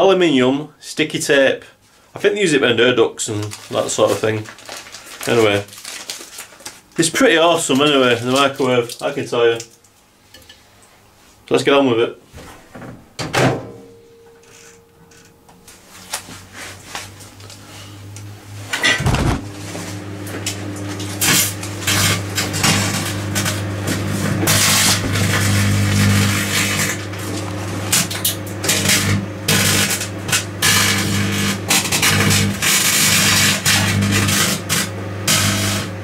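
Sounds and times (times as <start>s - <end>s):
microwave oven humming: 12.4s - 36.0s
loud thud: 19.0s - 19.5s
crackling sparks: 20.4s - 35.9s.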